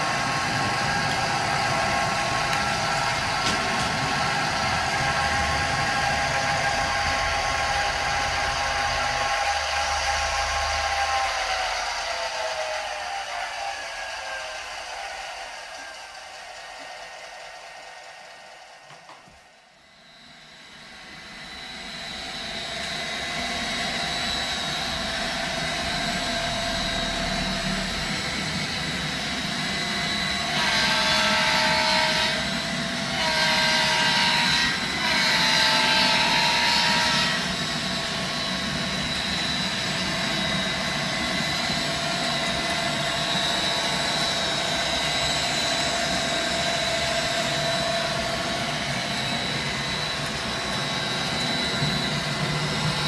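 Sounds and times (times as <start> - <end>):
two-tone train horn blasts: 0.0 - 9.2, 30.4 - 37.9
model train droning: 0.0 - 53.0.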